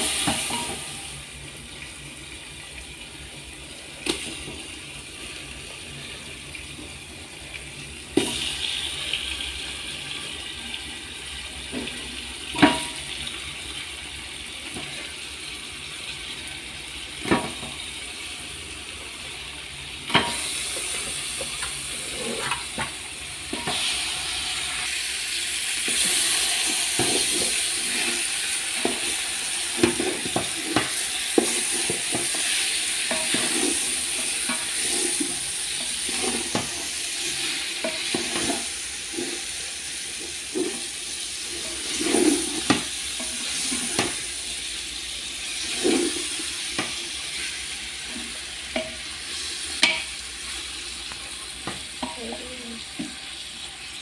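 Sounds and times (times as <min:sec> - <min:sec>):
food sizzling in a pan: 0:00.0 - 0:54.0
utensil scraping a pan: 0:20.1 - 0:24.2, 0:25.8 - 0:44.4, 0:45.5 - 0:50.6.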